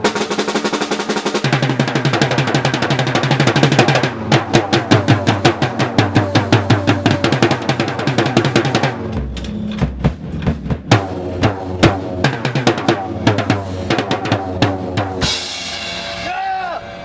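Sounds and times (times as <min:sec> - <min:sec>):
rapid drum fill: 0:00.0 - 0:16.7
band music: 0:00.0 - 0:17.0
cymbal crash: 0:14.8 - 0:17.0.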